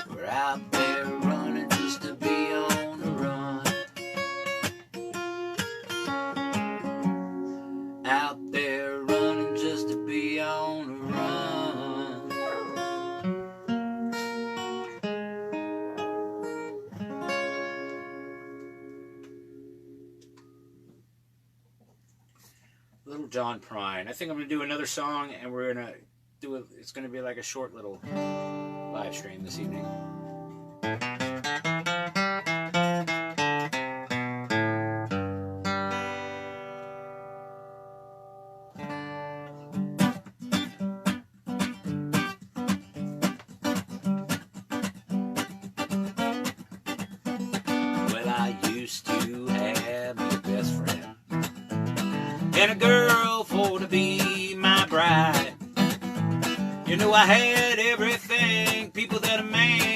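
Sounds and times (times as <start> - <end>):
acoustic guitar strumming chords: 0.0 - 21.1, 28.0 - 59.9.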